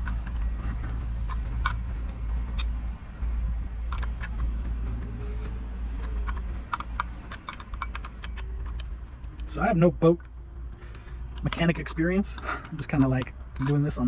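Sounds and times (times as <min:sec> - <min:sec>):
low rumble: 0:00.0 - 0:14.0
hand tools clinking on metal: 0:11.4 - 0:14.0.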